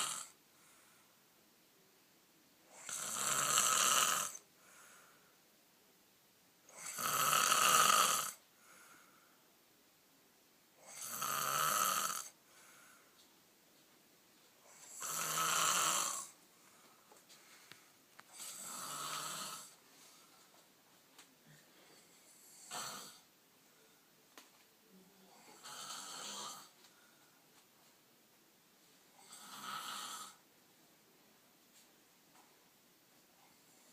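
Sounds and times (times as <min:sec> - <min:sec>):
man snoring: 0:00.0 - 0:00.4, 0:02.7 - 0:04.4, 0:06.7 - 0:08.4, 0:10.8 - 0:12.4, 0:14.7 - 0:16.4, 0:18.3 - 0:19.8, 0:22.3 - 0:23.3, 0:25.4 - 0:26.7, 0:29.2 - 0:30.4
faint breath: 0:00.5 - 0:01.3, 0:04.6 - 0:05.5, 0:08.5 - 0:09.6, 0:12.4 - 0:13.3, 0:16.5 - 0:18.6, 0:19.7 - 0:20.7, 0:21.4 - 0:22.8, 0:26.7 - 0:27.6.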